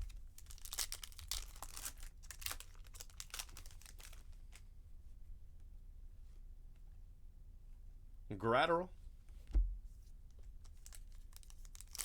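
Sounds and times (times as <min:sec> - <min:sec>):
foil wrapper tearing and crinkling: 0:00.0 - 0:04.6, 0:10.6 - 0:12.0.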